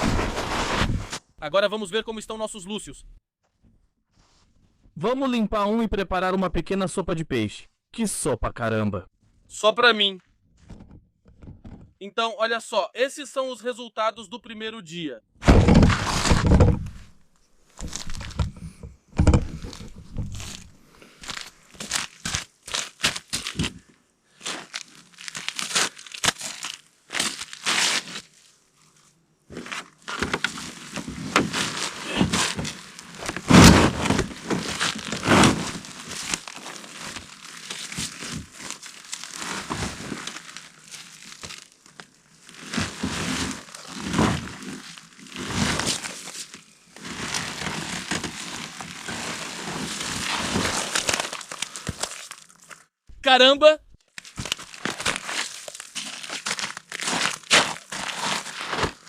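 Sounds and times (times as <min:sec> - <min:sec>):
plastic crinkling and rustling: 0:17.8 - 0:18.6, 0:19.2 - 0:52.9, 0:54.1 - 0:59.0.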